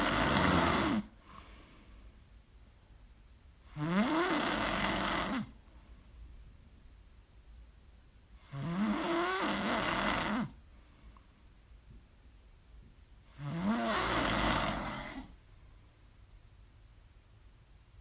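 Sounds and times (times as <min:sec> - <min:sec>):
person snoring loudly: 0:00.0 - 0:01.2, 0:03.7 - 0:05.6, 0:08.4 - 0:10.6, 0:13.3 - 0:15.4.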